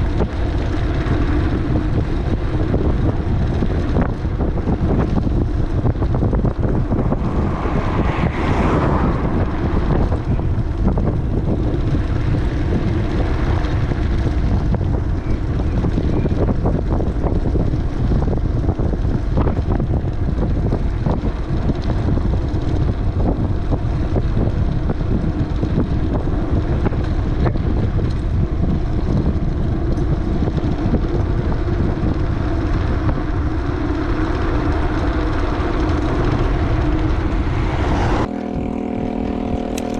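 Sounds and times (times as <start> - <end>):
wind buffeting microphone: 0.0 - 39.9
faint ticks and rattles: 9.6 - 37.3.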